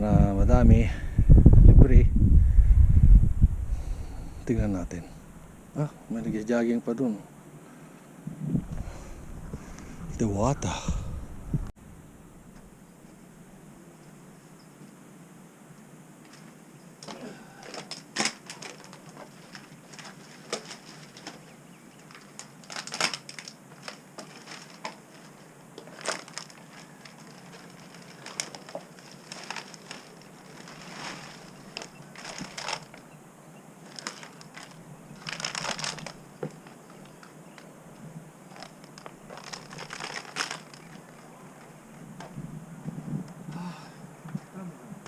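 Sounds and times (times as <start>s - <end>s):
rustling: 15.8s - 43.5s
crunching and crackling: 16.2s - 33.2s, 33.8s - 42.4s
sharp cracks: 17.0s - 21.4s, 22.1s - 25.0s.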